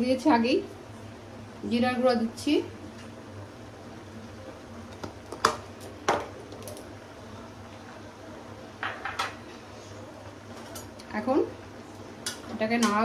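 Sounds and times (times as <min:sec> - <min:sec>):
utensils clinking on cookware: 0:12.2 - 0:13.0.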